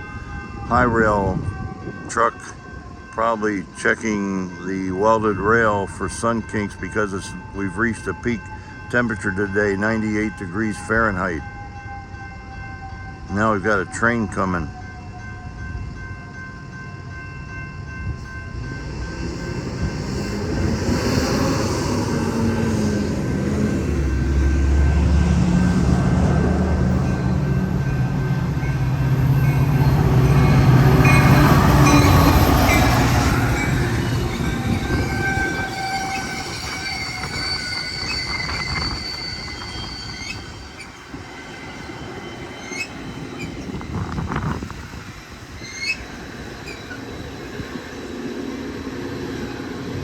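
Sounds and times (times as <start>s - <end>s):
diesel locomotive engine: 0.0s - 50.0s
rumble of passing train cars: 0.0s - 50.0s
train wheels and brakes squealing: 29.4s - 50.0s.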